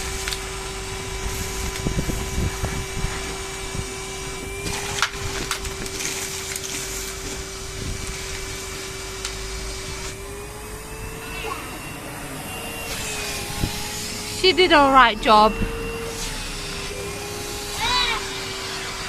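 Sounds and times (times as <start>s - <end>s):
vacuum cleaner whining: 0.0s - 19.0s
clicks and rattles of debris: 4.7s - 7.5s.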